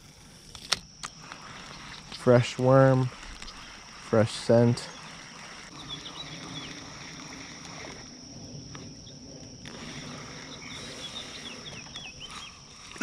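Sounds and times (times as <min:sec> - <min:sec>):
steady high-pitched whine: 0:00.0 - 0:13.0.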